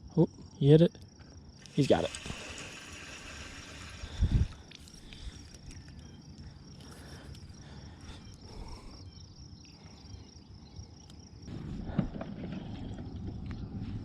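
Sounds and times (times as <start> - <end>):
insects buzzing: 0.0 - 14.0
low rumble: 11.5 - 14.0.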